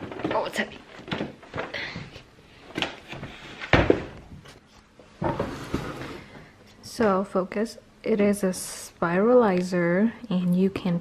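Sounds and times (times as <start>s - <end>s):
box knocks and rustles: 2.8s - 4.6s.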